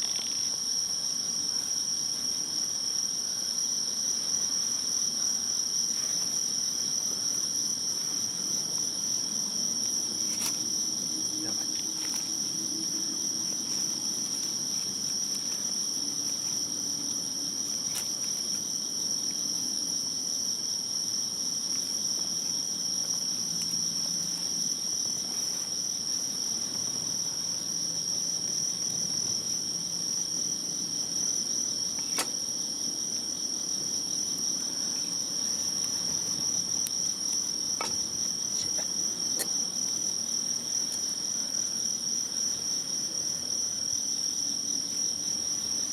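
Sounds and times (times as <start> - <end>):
insects trilling: 0.0 - 45.9.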